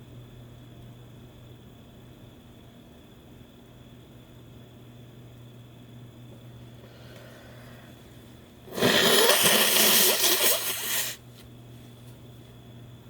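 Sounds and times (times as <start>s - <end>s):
steady low hum: 0.0s - 13.0s
forceful breath through nose: 8.7s - 11.2s.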